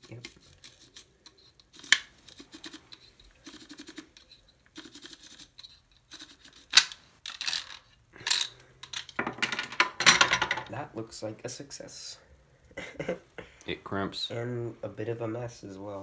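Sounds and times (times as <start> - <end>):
pencil wood cracking: 0.0 - 7.6.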